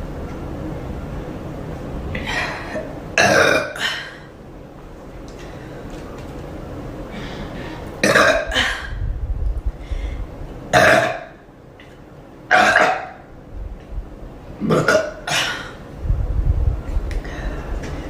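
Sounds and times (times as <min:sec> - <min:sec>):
woman burping: 0:02.2 - 0:04.3, 0:08.0 - 0:09.0, 0:10.7 - 0:11.4, 0:12.5 - 0:13.2, 0:14.6 - 0:15.8.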